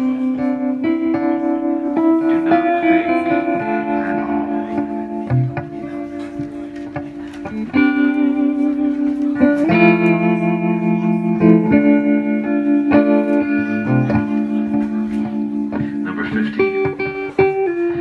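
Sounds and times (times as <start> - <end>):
ringing guitar chords: 0.0 - 18.0.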